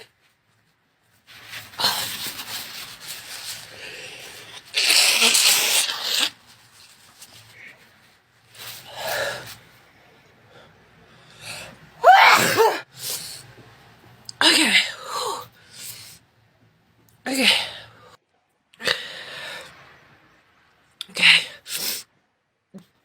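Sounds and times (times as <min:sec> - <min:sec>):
person sneezing: 0:12.0 - 0:13.4.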